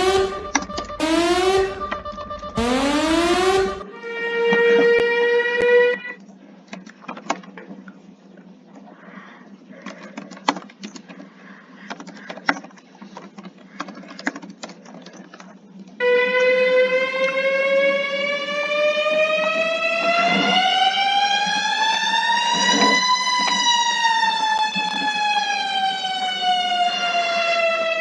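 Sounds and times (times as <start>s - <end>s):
warning siren wailing: 0.0s - 6.2s, 16.0s - 28.0s.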